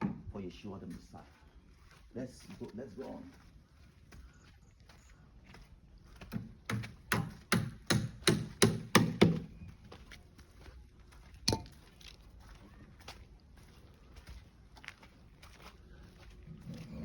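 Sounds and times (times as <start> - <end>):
hammering on wood: 6.3 - 9.5.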